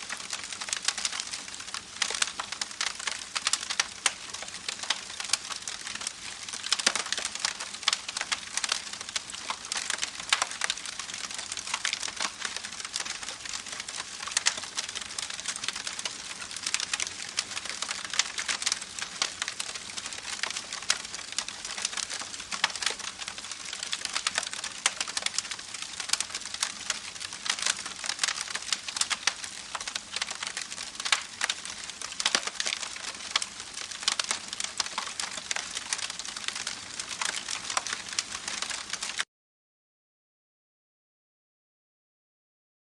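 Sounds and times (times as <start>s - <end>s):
campfire crackling and popping: 0.0s - 39.3s.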